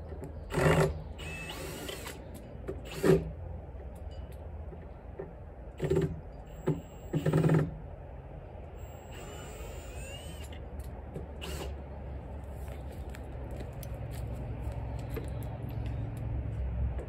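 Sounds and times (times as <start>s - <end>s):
steady low rumble: 7.8s - 17.0s
electric screwdriver whirring: 8.8s - 10.6s, 11.4s - 11.8s.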